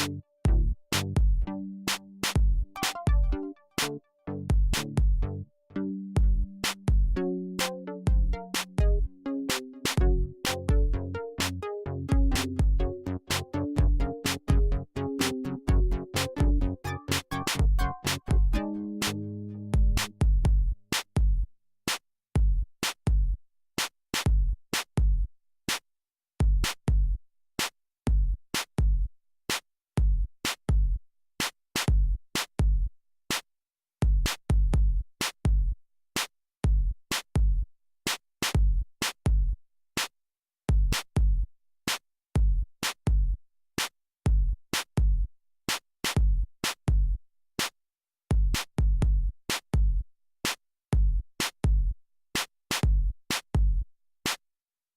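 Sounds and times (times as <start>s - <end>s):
drum machine beat: 0.0s - 5.4s, 6.2s - 21.4s, 26.4s - 27.2s, 34.0s - 35.7s, 44.3s - 45.3s, 46.1s - 47.2s, 48.4s - 50.0s, 51.0s - 51.9s, 52.7s - 53.8s.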